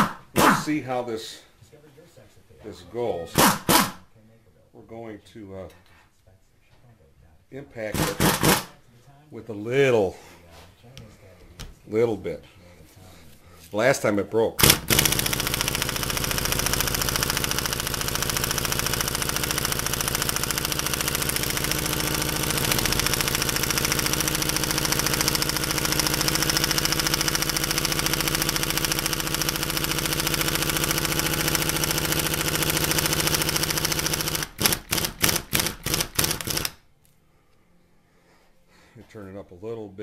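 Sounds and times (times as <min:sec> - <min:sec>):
impact gun hammering: 0:03.4 - 0:04.0, 0:07.9 - 0:08.7, 0:14.6 - 0:36.8.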